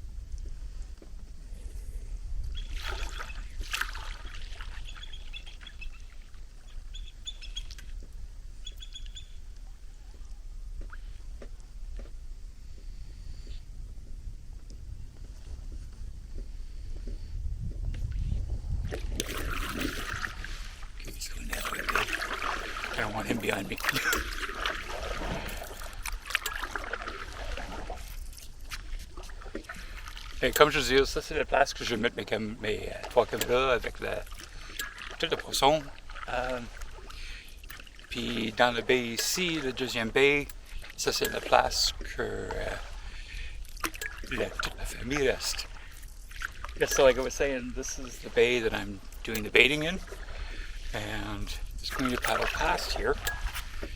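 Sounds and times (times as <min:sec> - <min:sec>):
splashing water: 0:02.6 - 0:06.4, 0:18.8 - 0:53.9.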